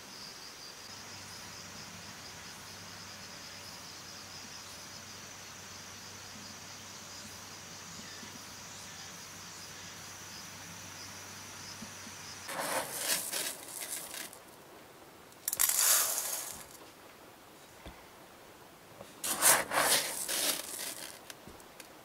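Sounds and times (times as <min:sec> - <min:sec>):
crickets chirping: 0:00.0 - 0:17.8, 0:19.0 - 0:22.0
rustling handling noises: 0:12.5 - 0:14.5, 0:15.4 - 0:17.0, 0:19.0 - 0:21.9.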